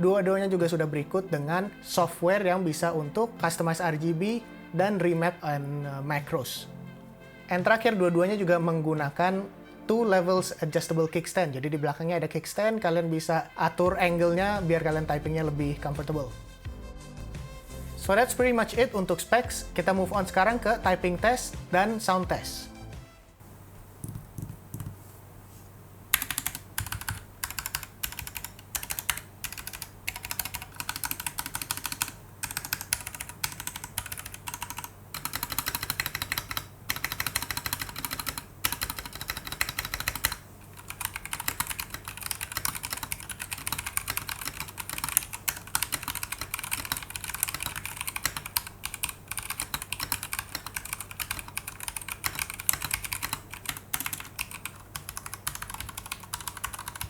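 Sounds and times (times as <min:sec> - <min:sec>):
fast typing on mechanical keyboard: 0:26.1 - 0:57.0.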